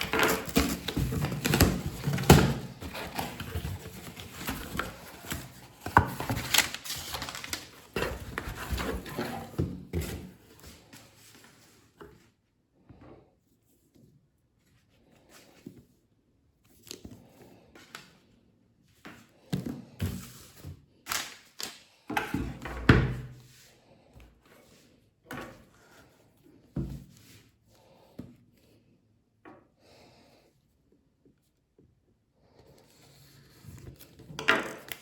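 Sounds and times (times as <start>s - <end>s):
cardboard packaging rubbing and sliding: 0.0s - 11.8s.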